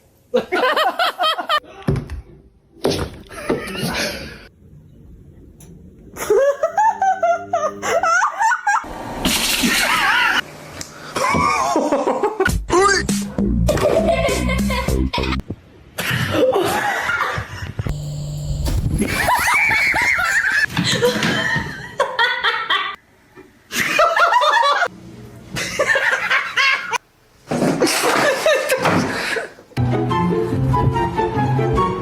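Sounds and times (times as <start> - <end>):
people laughing: 0.3 - 1.6, 3.3 - 4.5, 6.2 - 10.4, 11.2 - 12.5, 13.7 - 15.4, 16.2 - 17.7, 19.0 - 23.0, 23.7 - 24.9, 27.8 - 29.5.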